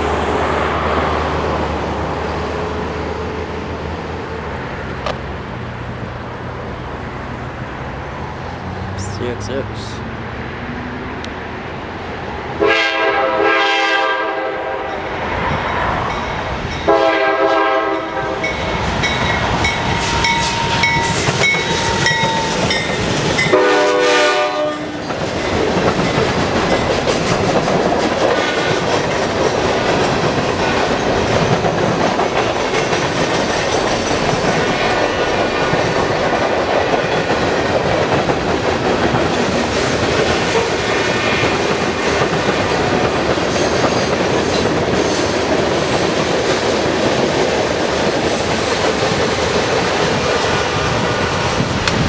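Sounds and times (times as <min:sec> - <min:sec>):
locomotive air horn blasts: 0:12.6 - 0:14.9, 0:16.9 - 0:18.5, 0:23.5 - 0:25.0
train wheels clickety-clack: 0:18.2 - 0:52.0.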